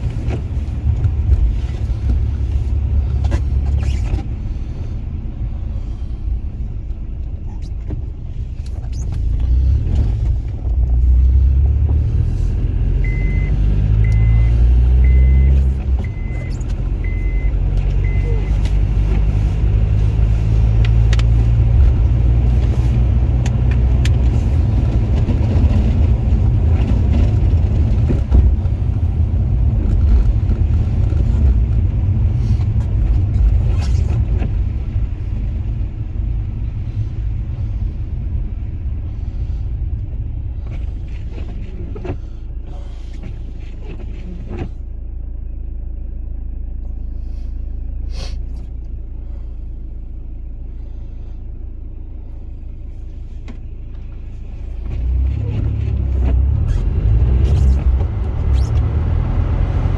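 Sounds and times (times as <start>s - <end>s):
car engine and road rumble: 0.0s - 59.9s
short electronic beeps: 13.0s - 18.7s.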